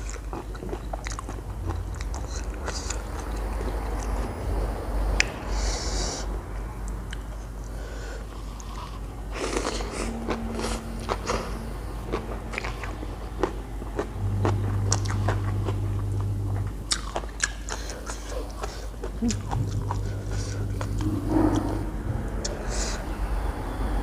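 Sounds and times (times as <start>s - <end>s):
chewing crunchy food: 0.0s - 4.3s, 8.4s - 21.8s.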